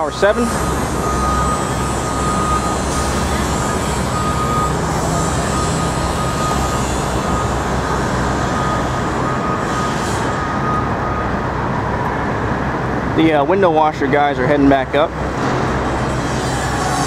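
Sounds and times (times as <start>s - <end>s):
back-up alarm beeping: 0.0s - 11.7s
city traffic rumble: 0.0s - 17.0s.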